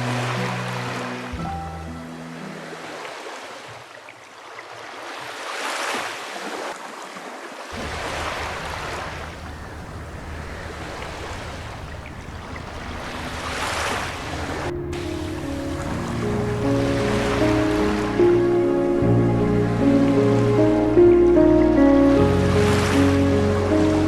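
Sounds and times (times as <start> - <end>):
sea waves washing onto beach: 7.7 - 18.4.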